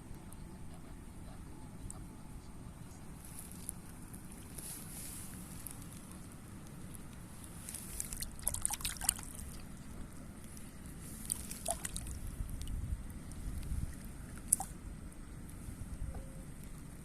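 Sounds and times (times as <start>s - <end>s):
steady low rumble: 0.0s - 17.0s
water splashing and sloshing: 6.8s - 14.8s.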